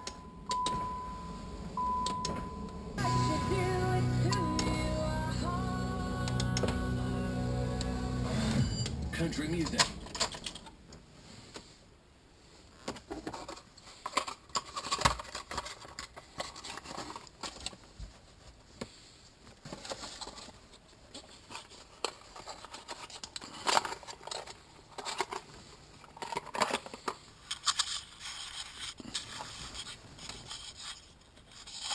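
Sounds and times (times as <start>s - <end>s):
hands handling parts clicking: 9.6s - 10.7s, 21.1s - 31.9s.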